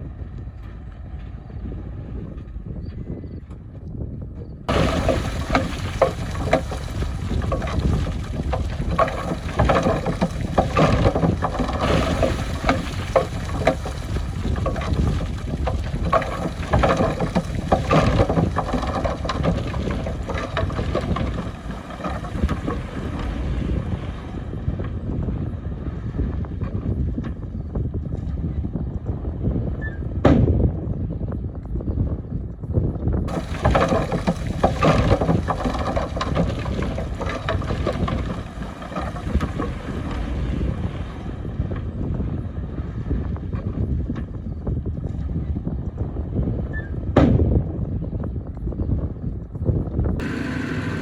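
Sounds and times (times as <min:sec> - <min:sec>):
diesel engine rumbling: 0:00.0 - 0:26.4, 0:33.3 - 0:42.9, 0:50.2 - 0:51.0
wind on microphone: 0:00.0 - 0:51.0
metal clanks and knocks: 0:04.7 - 0:22.9, 0:33.3 - 0:39.8.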